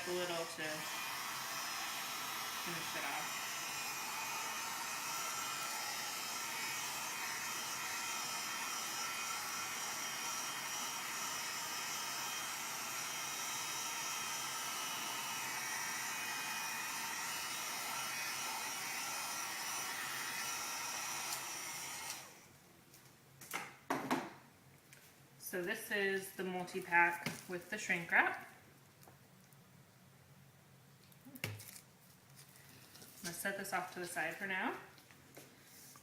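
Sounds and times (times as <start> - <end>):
heat gun blowing: 0.0 - 22.5.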